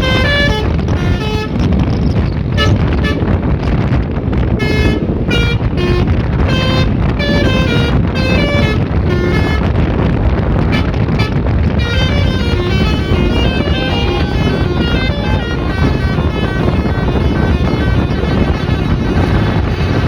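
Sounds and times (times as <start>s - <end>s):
multi-tone bus horn tune: 0.0s - 20.0s
steady low rumble: 0.0s - 20.0s.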